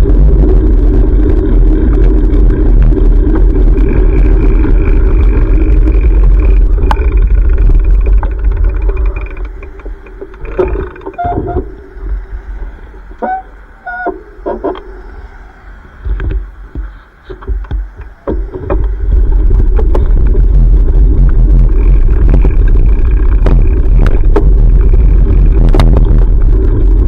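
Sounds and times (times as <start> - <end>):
traffic noise: 0.0 - 27.0
wind rumble on microphone: 0.0 - 27.0
short high squeaks: 10.4 - 12.0, 13.2 - 15.1.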